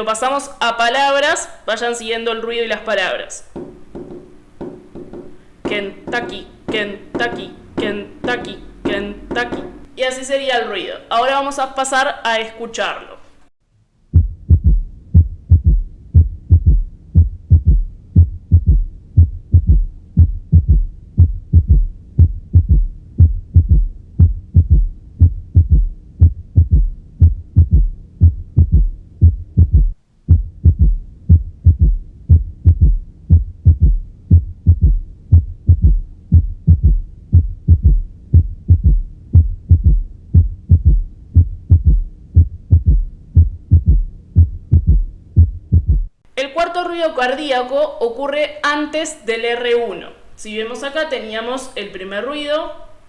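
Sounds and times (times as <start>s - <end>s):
heartbeat gallop thuds: 3.6s - 10.0s, 14.1s - 46.2s.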